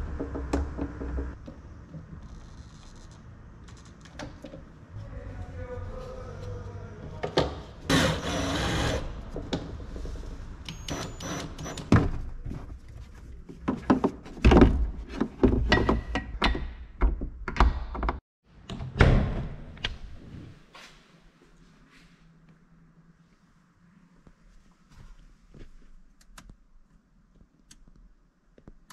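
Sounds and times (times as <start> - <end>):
knocks clunks and clicks of handling: 13.6 - 18.9.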